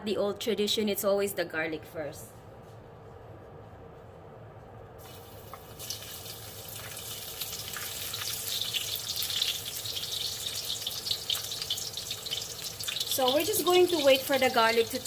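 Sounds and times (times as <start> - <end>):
garlic sizzling in hot oil: 5.0 - 15.0.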